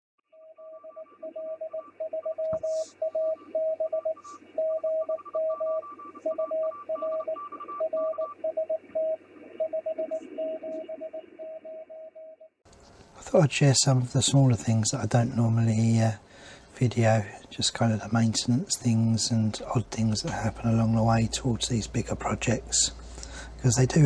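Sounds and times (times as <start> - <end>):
morse code beeps: 0.4 - 12.4
radio receiver hiss: 2.3 - 11.1.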